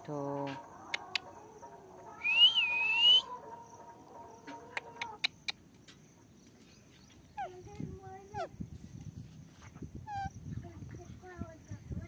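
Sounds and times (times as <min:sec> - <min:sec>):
sharp clicks: 0:01.0 - 0:01.3
parakeet whistle: 0:02.2 - 0:03.3.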